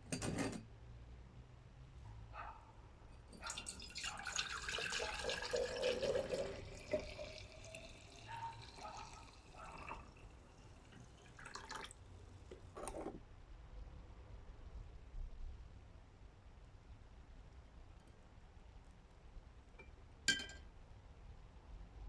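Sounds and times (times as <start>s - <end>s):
water dripping and trickling: 3.3s - 12.0s.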